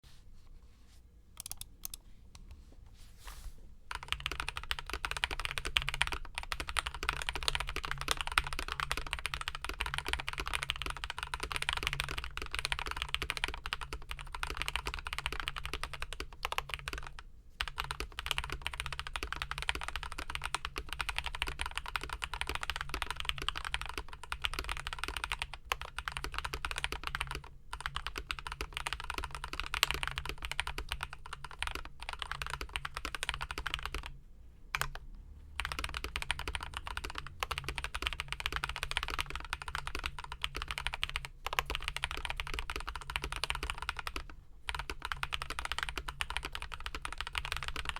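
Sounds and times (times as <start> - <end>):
mechanical keyboard typing: 1.4 - 2.0, 3.9 - 35.0, 35.6 - 47.9.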